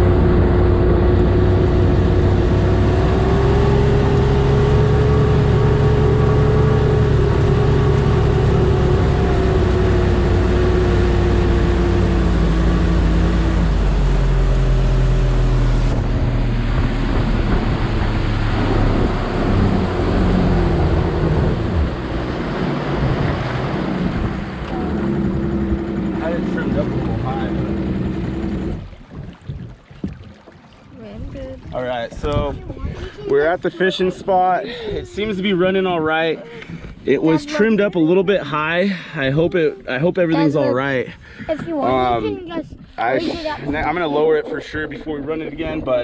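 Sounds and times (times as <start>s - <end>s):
outboard engine running: 0.0s - 46.0s
water rushing against hull: 0.0s - 46.0s
wind noise: 28.6s - 30.4s, 31.0s - 37.3s, 41.1s - 46.0s.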